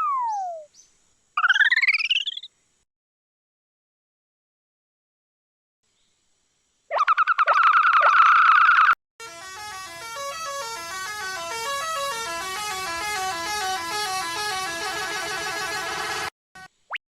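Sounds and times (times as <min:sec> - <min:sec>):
layered synthetic horn tones: 0:09.2 - 0:16.8.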